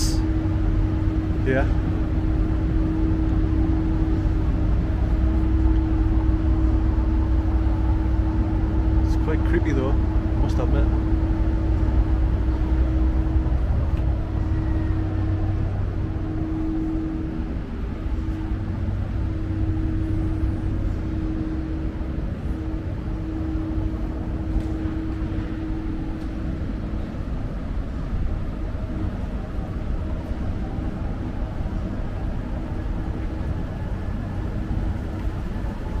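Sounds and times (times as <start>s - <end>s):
constant tone: 0.0s - 36.0s
low mechanical hum and rumble: 0.0s - 36.0s.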